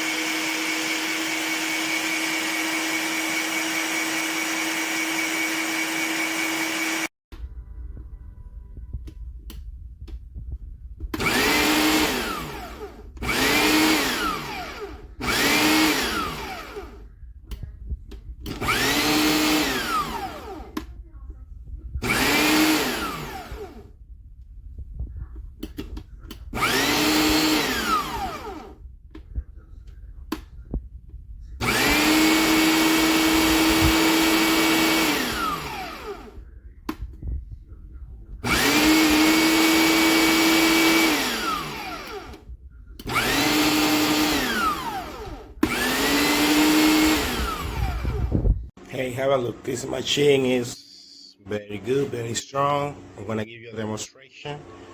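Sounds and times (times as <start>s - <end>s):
electric meat grinder motor whining: 0.0s - 7.1s, 11.2s - 17.0s, 18.5s - 20.8s, 22.0s - 23.9s, 26.5s - 28.8s, 31.6s - 36.4s, 38.4s - 48.6s.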